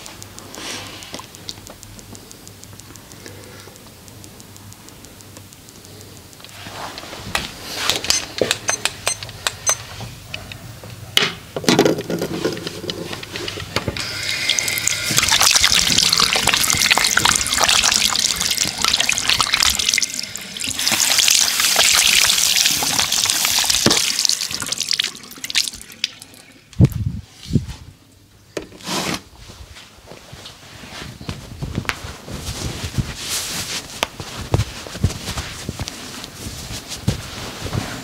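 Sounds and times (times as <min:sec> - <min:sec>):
clicks and taps: 0:00.0 - 0:14.0
water running from a tap: 0:14.2 - 0:26.6.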